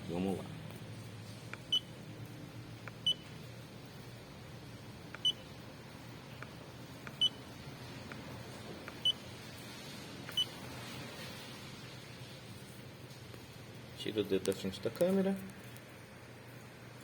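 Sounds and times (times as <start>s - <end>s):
short high-pitched beeps: 7.1s - 7.4s.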